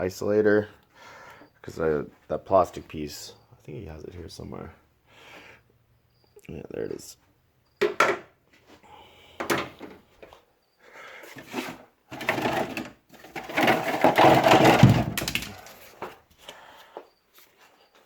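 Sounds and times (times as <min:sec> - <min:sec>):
plastic and metal parts clattering: 0:09.4 - 0:10.4, 0:11.3 - 0:16.2.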